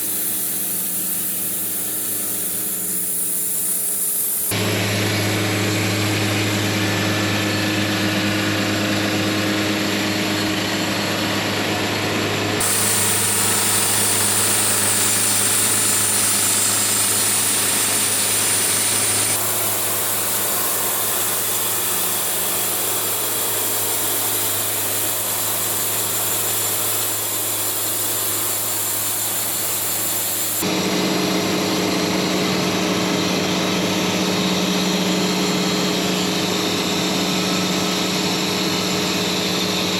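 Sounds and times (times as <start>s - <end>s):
sawmill engine humming: 4.2s - 39.9s
saw blade cutting log: 12.6s - 30.7s.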